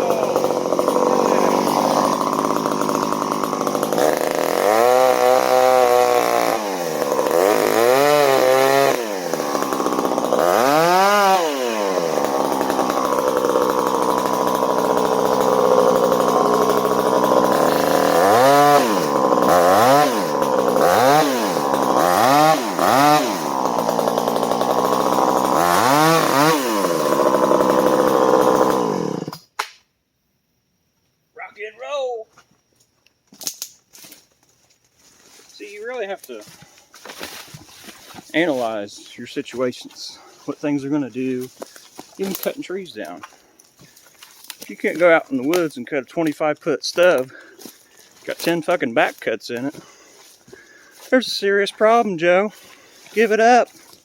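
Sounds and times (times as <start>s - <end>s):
chainsaw engine revving: 0.0s - 29.4s.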